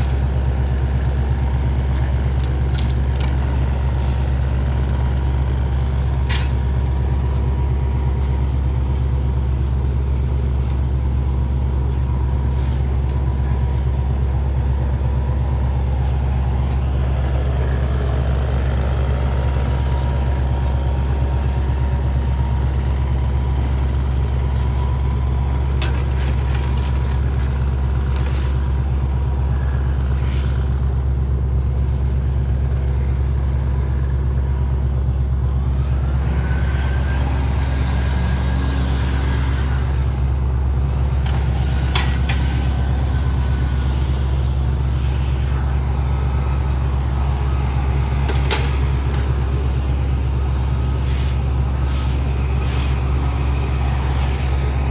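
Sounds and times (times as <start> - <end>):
heavy engine rumbling: 0.0 - 54.9.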